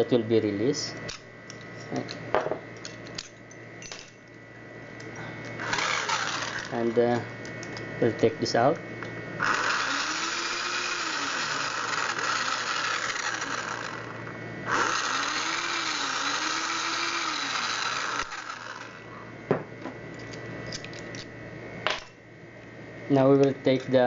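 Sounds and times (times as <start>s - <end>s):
power drill driving screws: 5.6s - 6.9s, 9.4s - 19.0s.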